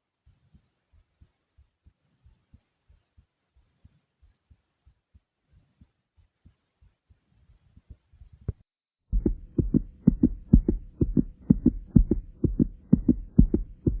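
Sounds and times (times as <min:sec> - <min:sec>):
faint steady hum: 0:07.5 - 0:14.0
fast heartbeat: 0:08.2 - 0:14.0.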